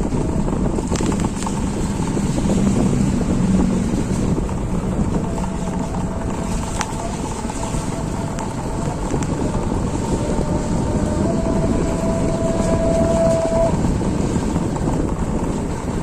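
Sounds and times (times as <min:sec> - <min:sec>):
heavy rain: 0:00.0 - 0:16.0
wind buffeting microphone: 0:00.0 - 0:16.0.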